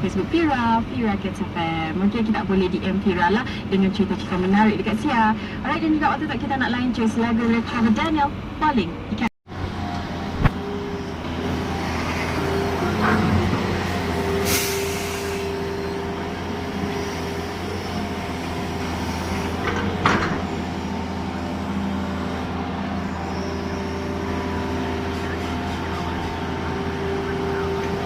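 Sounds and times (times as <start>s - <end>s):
heavy diesel engine running: 9.5s - 28.0s
brief hisses: 14.4s - 15.5s.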